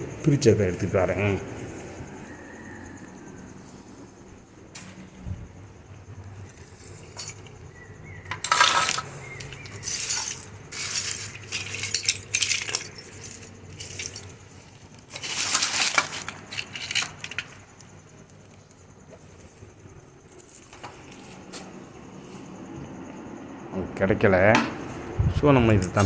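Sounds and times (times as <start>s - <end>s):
small metal parts clinking: 4.7s - 21.7s.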